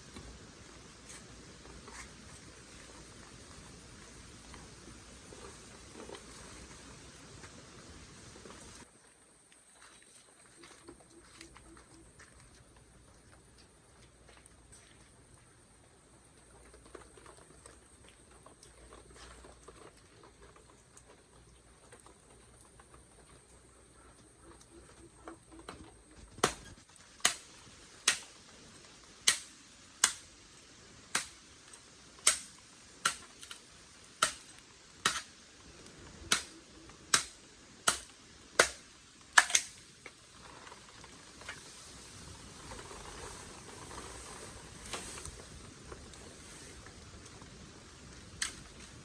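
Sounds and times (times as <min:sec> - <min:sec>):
faint rustling hiss: 0:00.0 - 0:49.0
sharp chopping knocks: 0:26.4 - 0:27.4.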